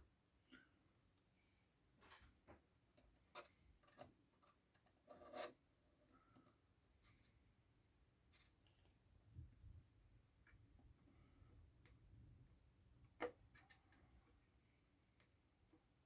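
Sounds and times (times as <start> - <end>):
small tool scraping: 3.3 - 5.6.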